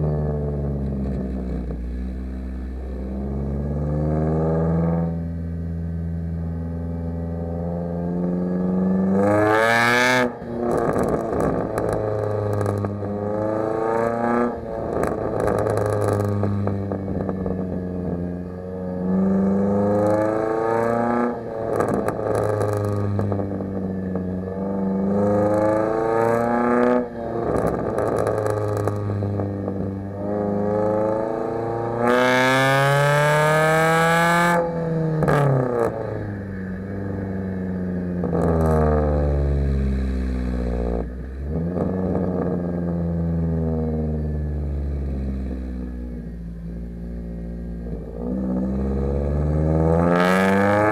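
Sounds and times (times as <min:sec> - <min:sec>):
car engine revving: 0:00.0 - 0:50.9
exhaust crackles and pops: 0:10.5 - 0:13.2, 0:14.7 - 0:18.2, 0:21.6 - 0:25.8, 0:27.4 - 0:30.0, 0:38.1 - 0:43.0.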